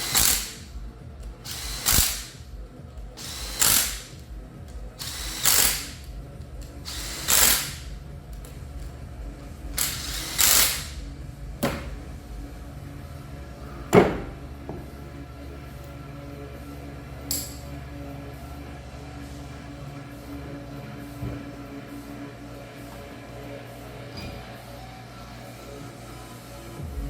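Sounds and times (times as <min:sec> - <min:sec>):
sharp metallic clicks: 0:00.0 - 0:02.4, 0:03.2 - 0:08.9
ratchet wrench ratcheting: 0:00.0 - 0:02.5, 0:03.2 - 0:08.9, 0:09.8 - 0:11.1.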